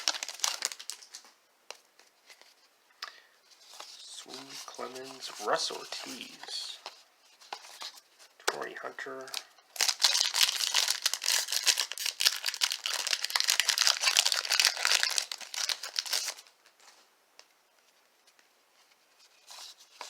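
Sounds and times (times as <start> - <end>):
plastic wrapper crinkling and tearing: 0.0 - 1.4, 9.1 - 16.5.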